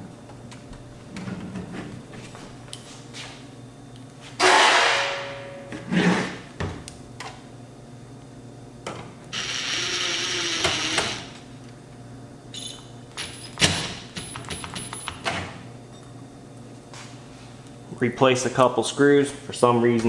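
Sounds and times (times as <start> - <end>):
power screwdriver running: 9.4 - 11.3.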